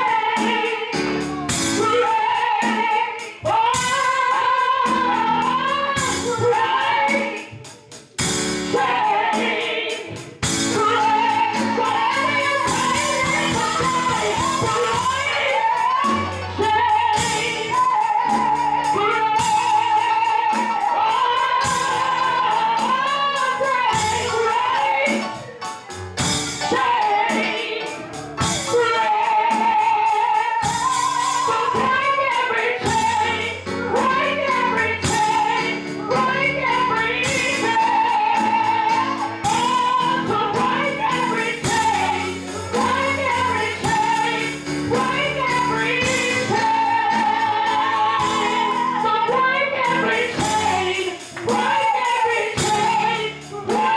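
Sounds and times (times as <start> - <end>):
woman singing: 0.0 - 7.9, 8.6 - 25.6, 26.5 - 53.9
instrumental chords and bass: 1.0 - 2.3, 10.4 - 20.2, 32.9 - 51.7.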